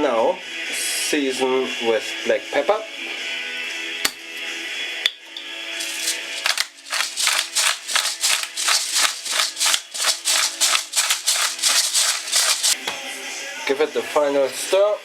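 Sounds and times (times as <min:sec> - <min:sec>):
pepper mill grinding: 0:05.8 - 0:12.8.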